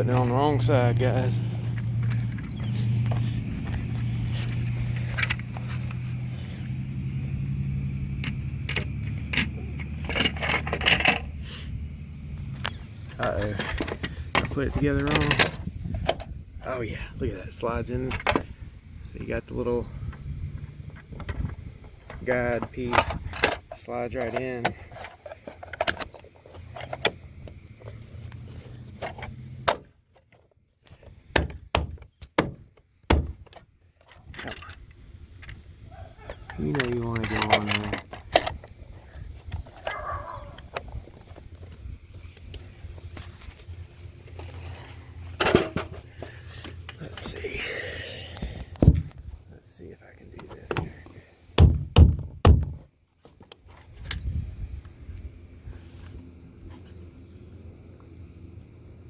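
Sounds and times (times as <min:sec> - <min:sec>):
steady low hum: 0:00.0 - 0:31.8
plastic and metal clicks and knocks: 0:20.9 - 0:27.6, 0:36.3 - 0:38.8.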